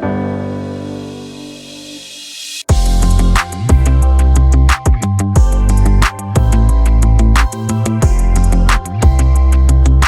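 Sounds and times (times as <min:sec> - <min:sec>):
electronic music with heavy bass: 0:02.7 - 0:10.0.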